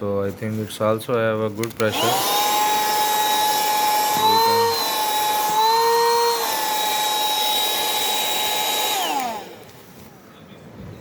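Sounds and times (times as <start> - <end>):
handheld vacuum motor whine: 1.6 - 9.9
motor spinning down: 1.9 - 9.7.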